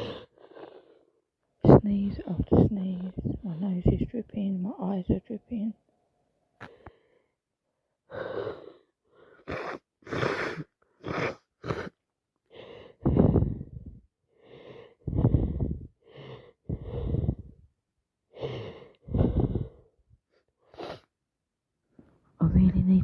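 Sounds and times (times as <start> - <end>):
gasping breaths: 0.0 - 1.2, 6.6 - 7.3, 8.0 - 17.6, 18.3 - 20.0.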